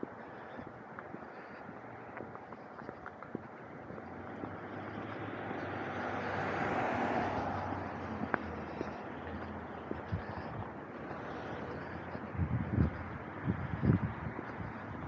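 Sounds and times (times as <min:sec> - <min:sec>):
car passing by: 0:04.1 - 0:09.7.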